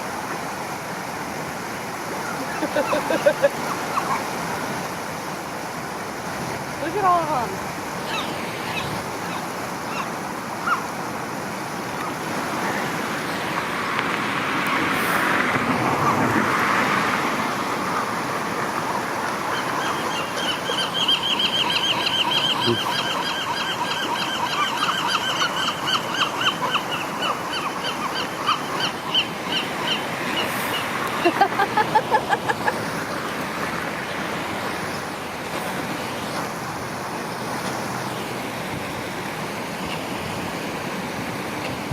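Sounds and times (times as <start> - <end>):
river water running: 0.0 - 41.9
waterfowl calling: 2.2 - 4.4, 8.0 - 10.9, 15.6 - 33.0.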